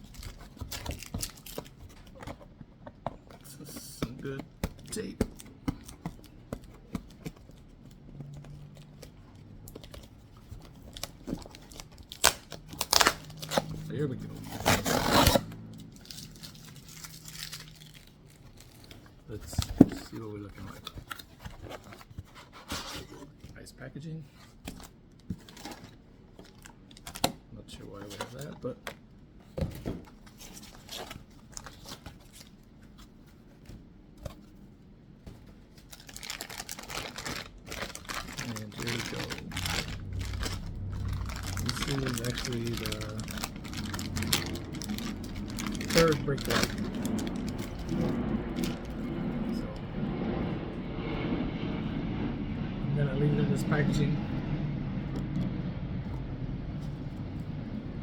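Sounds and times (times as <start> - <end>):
packing tape crackle: 0.0 - 2.3, 3.3 - 22.1, 35.7 - 49.6
cardboard box clicks and rustles: 0.0 - 23.4, 24.4 - 34.6, 35.4 - 49.2.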